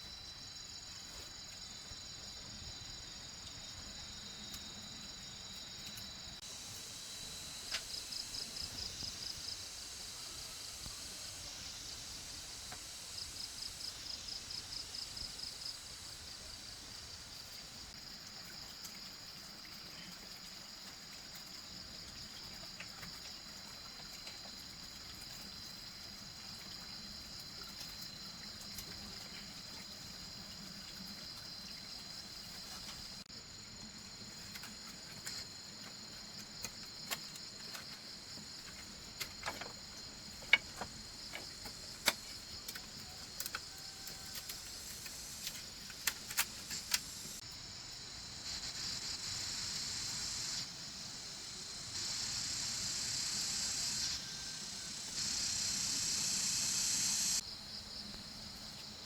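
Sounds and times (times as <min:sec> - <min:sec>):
insects chirring: 0:00.0 - 0:59.0.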